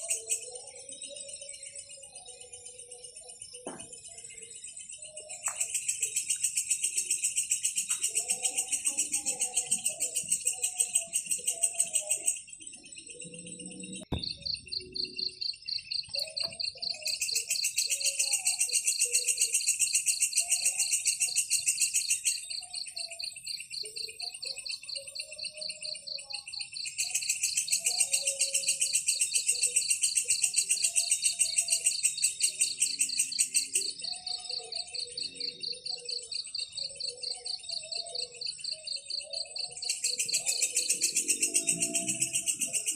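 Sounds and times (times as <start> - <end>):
insects trilling: 0.0 - 42.9
buzzy pulsing insect chorus: 37.3 - 42.9.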